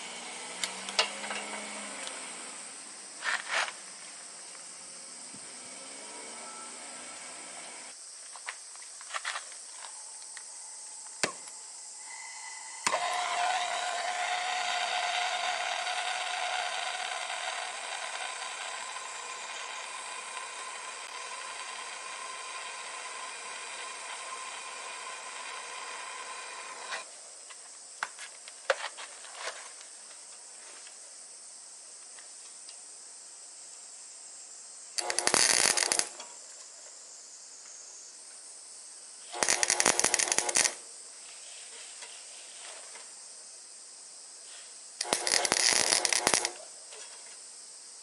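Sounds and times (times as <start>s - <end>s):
welder sharp pops: 35.0s - 36.3s, 39.3s - 40.8s, 45.0s - 46.6s
welding arc hissing and crackling: 35.0s - 36.3s, 39.3s - 40.8s, 45.0s - 46.7s.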